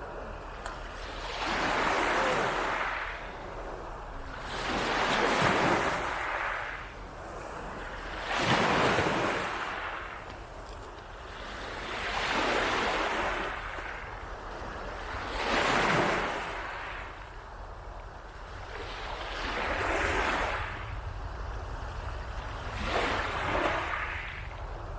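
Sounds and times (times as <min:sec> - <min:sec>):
waves breaking on beach: 0:00.0 - 0:24.9.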